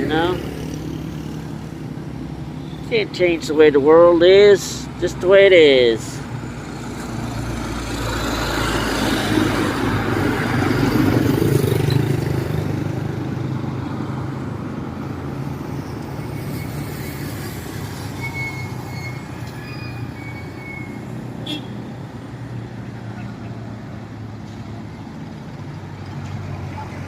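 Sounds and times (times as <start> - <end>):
steady traffic noise: 0.0 - 27.0
vehicle passing close by: 6.2 - 27.0.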